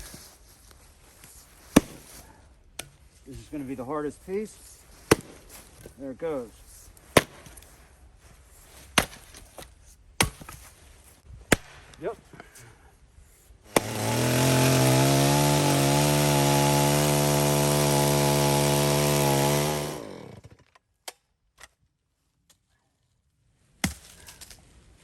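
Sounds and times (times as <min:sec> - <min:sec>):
chainsaw engine running: 0:13.7 - 0:20.6.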